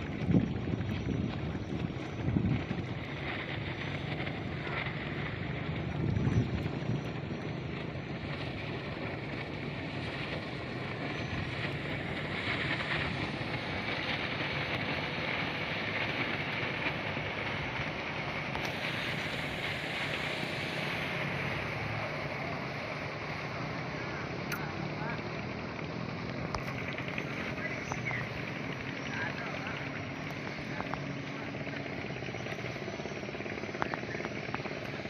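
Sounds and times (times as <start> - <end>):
wind on microphone: 0.0 - 4.9, 5.7 - 7.3
speedboat engine: 0.0 - 35.0
water rushing: 8.4 - 33.1.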